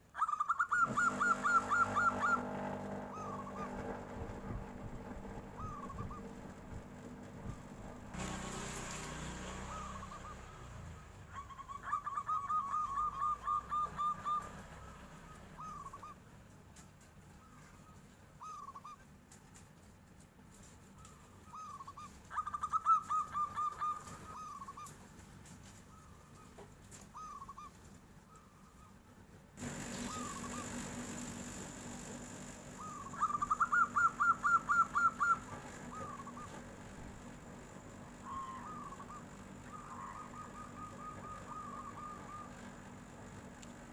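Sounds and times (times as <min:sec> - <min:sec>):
dove cooing: 0:00.0 - 0:07.8, 0:09.5 - 0:16.2, 0:21.1 - 0:25.0, 0:25.9 - 0:28.4, 0:29.6 - 0:31.2, 0:32.7 - 0:43.9
faint hum: 0:00.0 - 0:19.4, 0:20.0 - 0:43.9.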